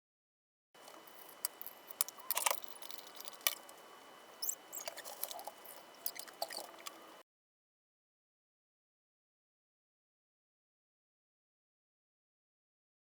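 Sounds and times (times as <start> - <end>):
faint high whine: 0.8 - 7.2.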